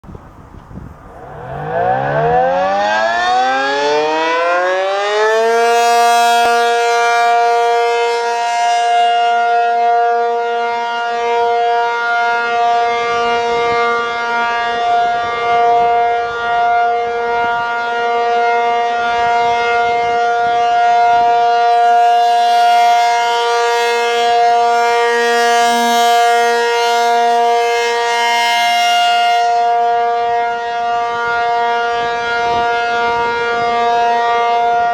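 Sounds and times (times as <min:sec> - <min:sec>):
tornado siren winding up: 0:01.0 - 0:10.1, 0:21.2 - 0:30.0.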